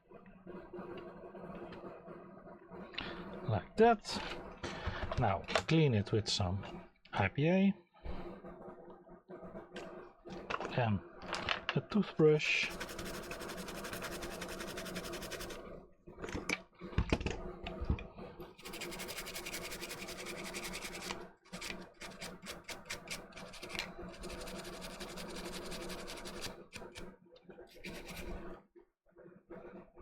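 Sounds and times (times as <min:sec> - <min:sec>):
toothbrush scrubbing circuit board: 0:12.4 - 0:15.7, 0:18.6 - 0:27.1, 0:27.7 - 0:28.5.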